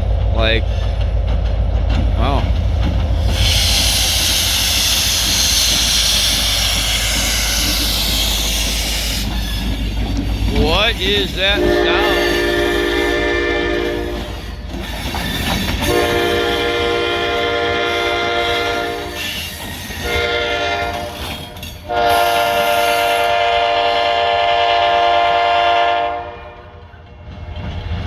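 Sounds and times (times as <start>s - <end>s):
train rumbling: 0.0s - 28.0s
locomotive air horn blasts: 11.2s - 14.4s, 15.8s - 19.4s, 20.0s - 21.3s, 21.9s - 26.8s.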